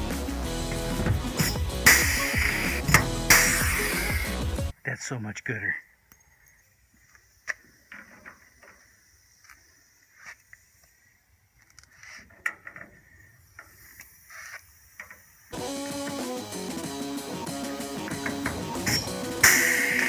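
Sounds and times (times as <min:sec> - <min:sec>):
strummed guitar music: 0:00.0 - 0:04.7, 0:15.6 - 0:20.0.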